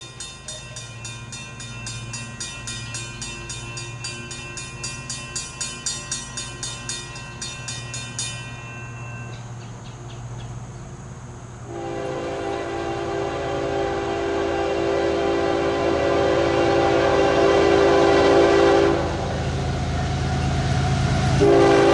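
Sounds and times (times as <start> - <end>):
rapid bell ringing: 0.0 - 9.8
freight train rumble: 0.0 - 21.9
train air horn chord: 11.7 - 19.3, 21.4 - 21.9.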